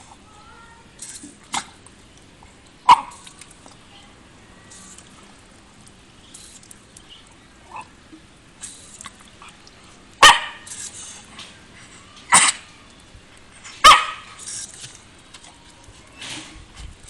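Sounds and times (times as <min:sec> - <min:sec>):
dog barking: 0:10.2 - 0:10.7, 0:13.8 - 0:14.3.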